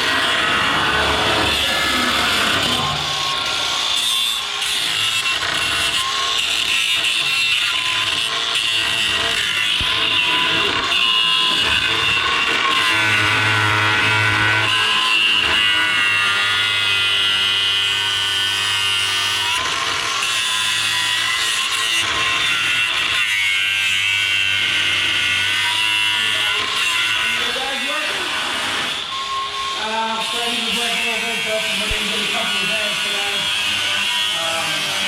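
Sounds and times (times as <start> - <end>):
reciprocating saw cutting metal: 0.0 - 35.0.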